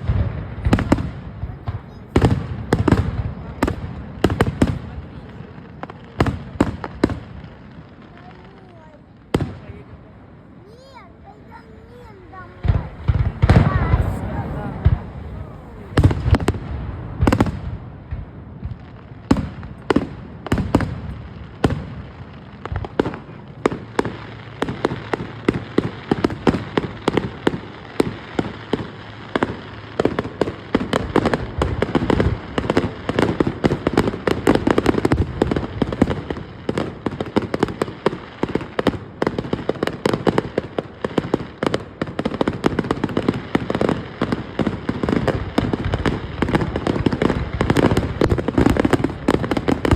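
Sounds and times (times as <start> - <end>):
fireworks bangs: 0.0 - 49.9
fireworks crackling pops: 0.0 - 49.9.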